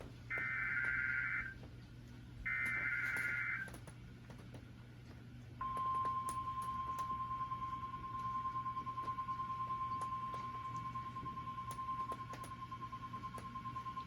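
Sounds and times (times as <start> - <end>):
single-pitched warning alarm tone: 0.3 - 1.6, 2.5 - 3.7, 5.6 - 14.0.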